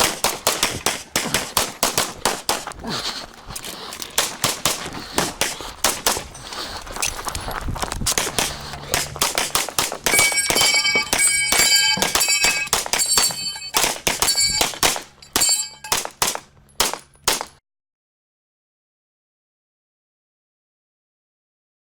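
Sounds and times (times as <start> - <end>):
pistol shots: 0.0 - 2.7, 4.2 - 6.3, 8.2 - 17.6
steel targets clanging: 10.1 - 17.6.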